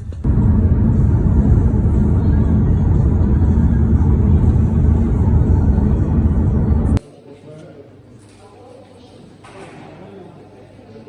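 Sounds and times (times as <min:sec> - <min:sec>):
road vehicle rumbling: 0:00.1 - 0:07.0.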